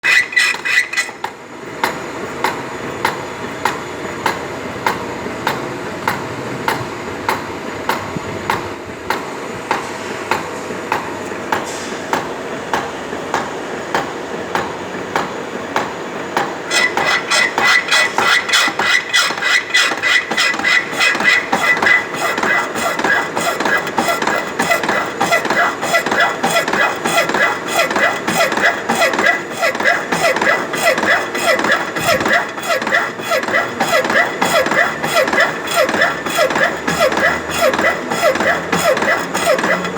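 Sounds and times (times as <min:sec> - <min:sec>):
slotting machine ram clacking: 0:16.7 - 0:39.9.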